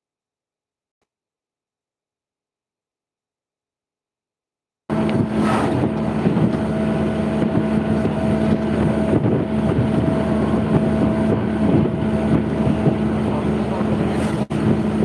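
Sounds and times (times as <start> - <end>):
engine drone: 4.9 - 15.0
wind noise on microphone: 4.9 - 15.0.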